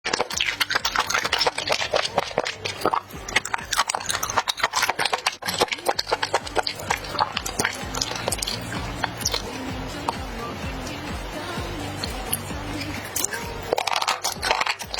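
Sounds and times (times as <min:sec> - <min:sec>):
crisp sticky clicks and crunches: 0:00.0 - 0:10.2, 0:13.1 - 0:14.9
chewing food: 0:00.0 - 0:14.9.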